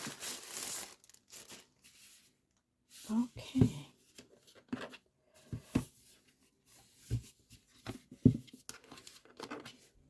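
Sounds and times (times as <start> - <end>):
cardboard box knocks and scrapes: 6.9 - 8.6.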